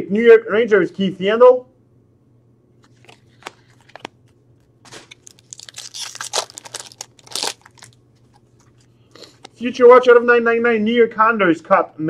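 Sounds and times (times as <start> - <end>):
cards rustling: 2.8 - 9.6.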